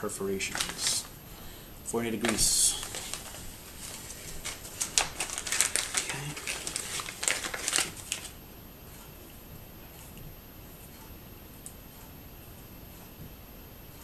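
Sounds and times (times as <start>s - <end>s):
crinkling and rustling handling noise: 0.0s - 9.1s
sharp crackles and clicks: 2.1s - 8.4s.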